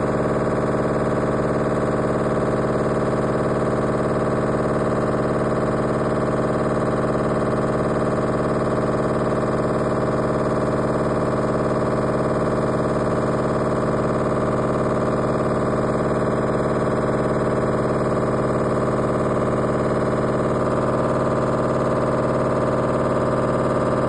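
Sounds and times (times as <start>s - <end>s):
washing machine spinning: 0.0s - 24.0s.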